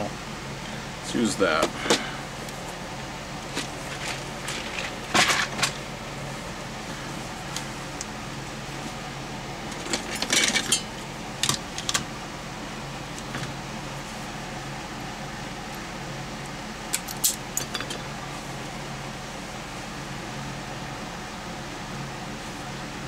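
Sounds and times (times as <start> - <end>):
steady low hum: 0.0 - 23.0
metal tools clinking and clattering: 9.8 - 11.0, 17.0 - 18.1.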